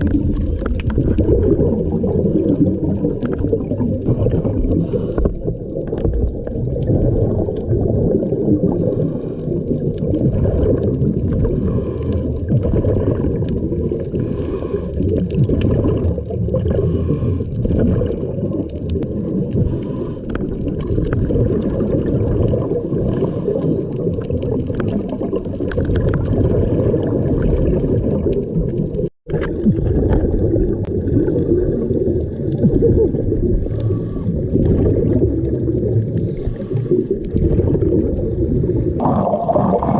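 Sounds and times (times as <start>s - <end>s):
bubbling of exhaled air: 0.0s - 39.9s
diver breathing through regulator: 2.0s - 3.0s, 4.6s - 5.5s, 8.7s - 9.8s, 11.4s - 12.5s, 14.0s - 15.3s, 16.6s - 17.8s, 19.5s - 20.6s, 23.0s - 24.1s, 31.2s - 32.2s, 33.6s - 34.7s, 36.1s - 37.3s.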